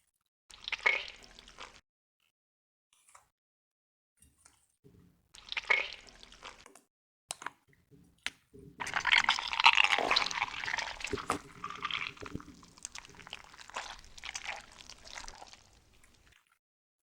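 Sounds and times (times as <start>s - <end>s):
wet sticky slime crackling: 8.8s - 16.3s.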